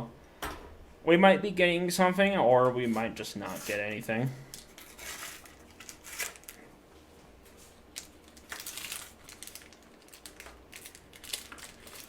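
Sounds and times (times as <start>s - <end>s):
foil wrapper crinkling: 3.4s - 6.7s, 7.6s - 12.0s.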